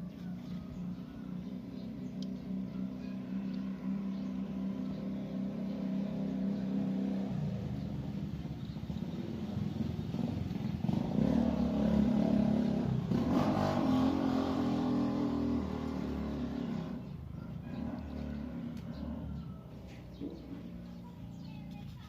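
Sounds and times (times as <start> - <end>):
water pump engine running: 0.0 - 11.9.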